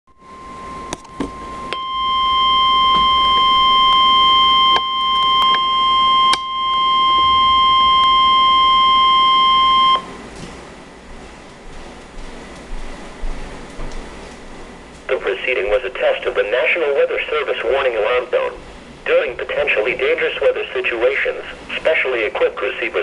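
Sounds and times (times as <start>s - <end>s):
steady warning alarm tone: 0.2s - 10.2s.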